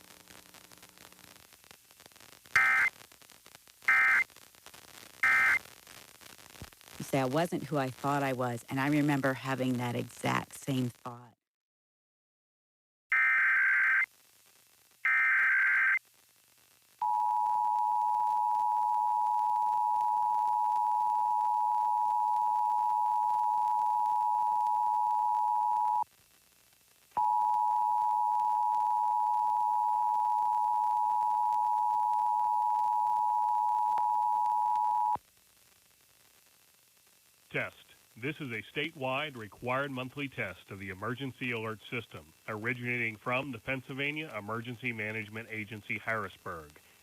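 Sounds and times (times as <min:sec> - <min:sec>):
buzzy digital data bursts: 0:02.6 - 0:03.0, 0:03.9 - 0:11.2.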